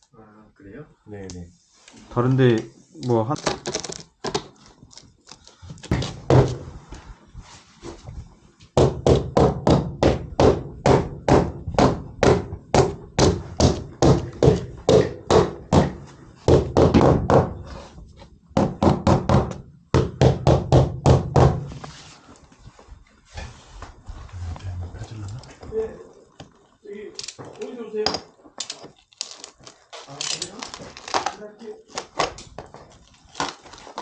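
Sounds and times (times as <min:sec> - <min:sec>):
hammer knocking on wall board: 0:05.9 - 0:06.6, 0:08.8 - 0:17.6, 0:18.6 - 0:21.7.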